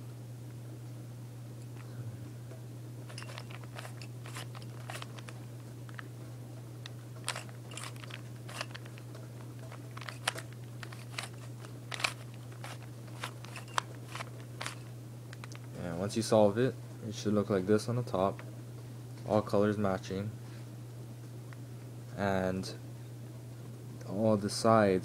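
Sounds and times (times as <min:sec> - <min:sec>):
steady low hum: 0:00.0 - 0:25.0
puzzle cube clicking as twisted: 0:09.6 - 0:14.8.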